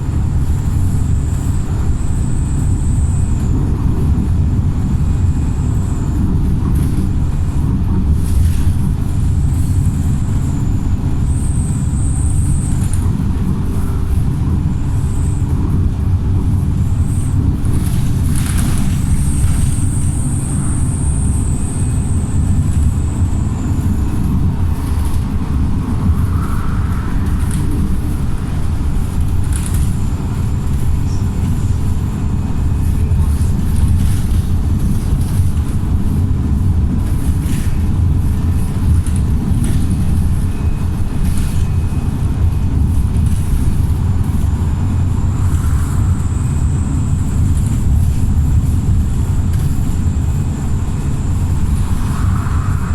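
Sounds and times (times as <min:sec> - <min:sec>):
bus diesel engine drone: 0:00.0 - 0:52.9
faint high whine: 0:40.4 - 0:52.9.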